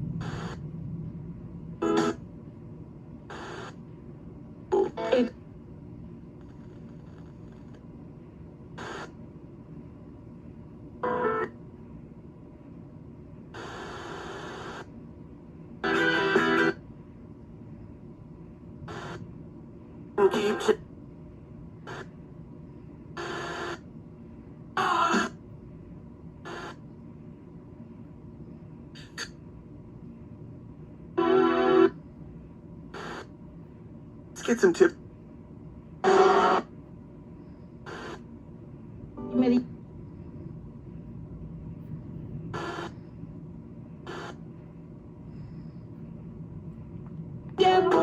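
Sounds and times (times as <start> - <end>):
low hum and hiss: 0.0 - 48.0
radio receiver hiss: 42.6 - 43.0, 44.1 - 44.4.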